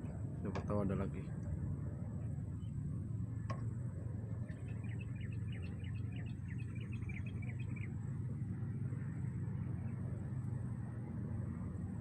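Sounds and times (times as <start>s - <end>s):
small bird chirping: 4.4s - 8.0s.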